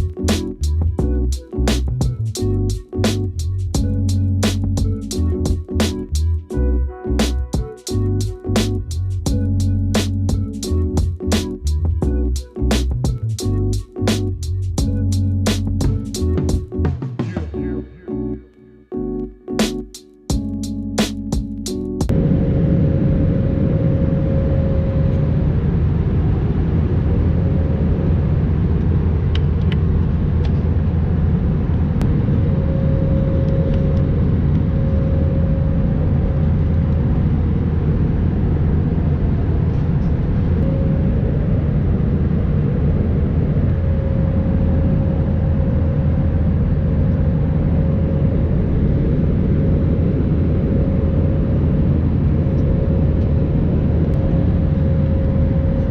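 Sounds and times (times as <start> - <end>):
faint hum: 0.0 - 55.9
airplane cabin rumble: 22.0 - 55.9.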